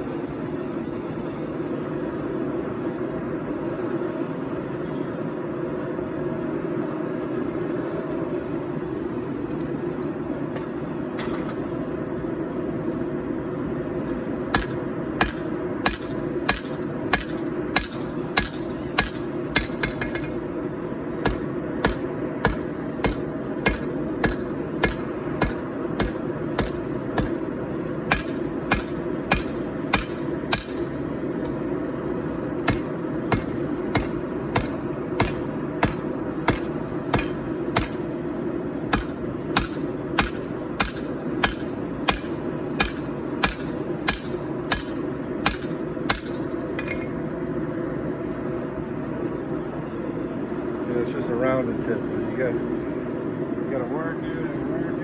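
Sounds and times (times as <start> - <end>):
hammer on steel over anvil: 14.5 - 20.4, 21.2 - 27.4, 28.1 - 31.6, 32.6 - 38.1, 38.9 - 47.0.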